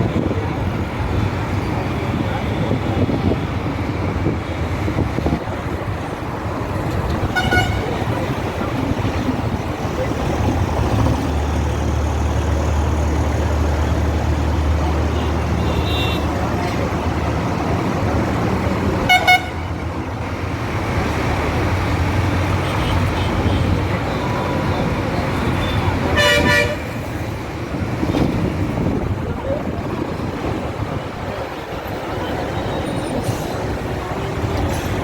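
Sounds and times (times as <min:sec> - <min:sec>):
traffic engines rumbling: 0:00.0 - 0:35.0
vehicle horn honks: 0:07.3 - 0:07.9, 0:19.1 - 0:19.7, 0:25.6 - 0:27.0.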